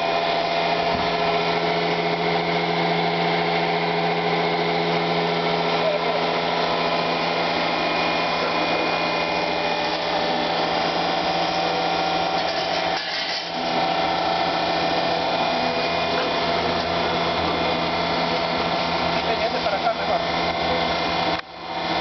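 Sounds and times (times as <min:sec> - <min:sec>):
milling machine hum and whine: 0:00.0 - 0:22.0.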